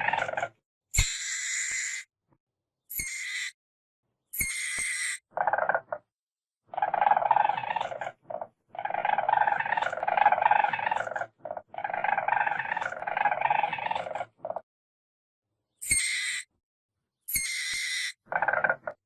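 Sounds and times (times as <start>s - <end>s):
weasel chattering: 6.7s - 14.3s.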